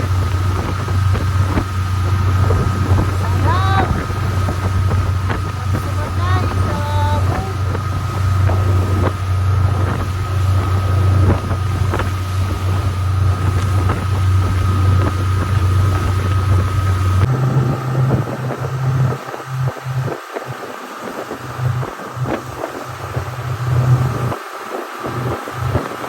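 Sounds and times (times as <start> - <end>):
motorboat engine drone: 0.0 - 26.0
wind buffeting microphone: 0.0 - 26.0.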